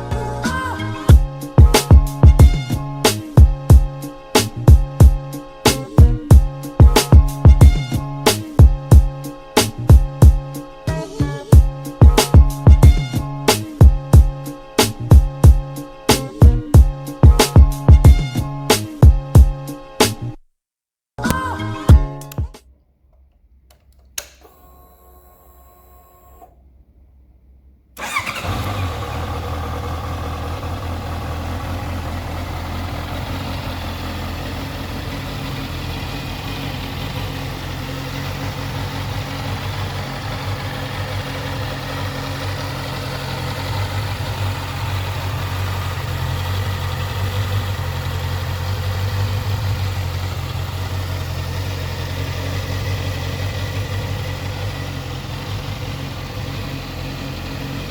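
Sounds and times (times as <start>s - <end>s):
motorcycle engine idling: 1.1s - 9.2s, 28.0s - 57.9s
faint ignition hum: 23.1s - 57.9s
ignition click: 23.7s - 26.6s, 28.0s - 28.9s.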